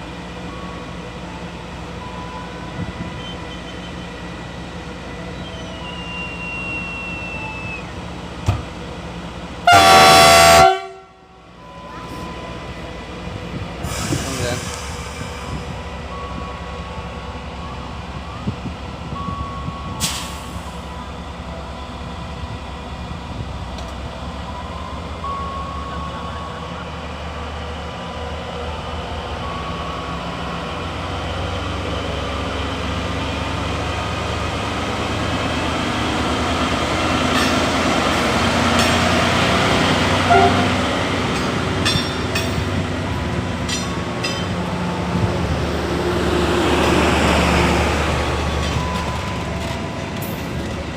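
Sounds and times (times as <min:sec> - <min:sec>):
train rumbling: 0:00.0 - 0:50.9
train wheels clicking and knocking: 0:36.4 - 0:45.5.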